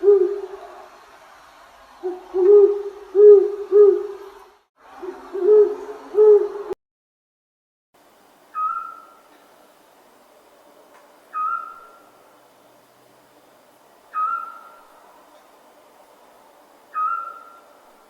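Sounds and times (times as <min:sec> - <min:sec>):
owl hooting: 0:00.0 - 0:00.6, 0:02.0 - 0:04.2, 0:05.0 - 0:06.7, 0:08.5 - 0:09.3, 0:11.3 - 0:12.2, 0:14.1 - 0:14.9, 0:16.9 - 0:17.7.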